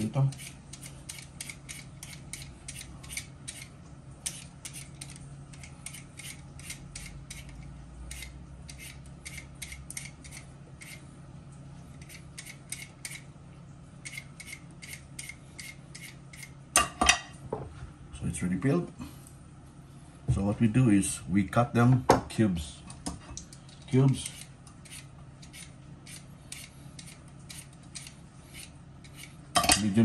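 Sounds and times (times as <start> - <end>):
vegetable peeler scraping: 0.0 - 11.0, 12.0 - 13.2, 14.0 - 16.5, 24.0 - 29.4
low steady hum: 0.0 - 30.0.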